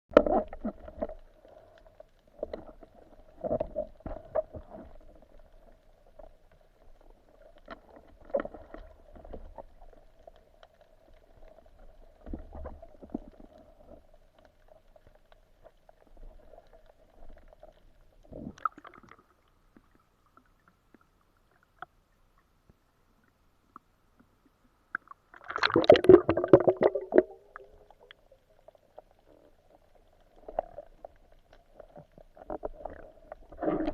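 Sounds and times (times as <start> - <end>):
underwater clicks and knocks: 0.1 - 1.3, 2.4 - 5.2
faint underwater hum: 0.6 - 33.9
underwater churning burst: 25.4 - 27.8.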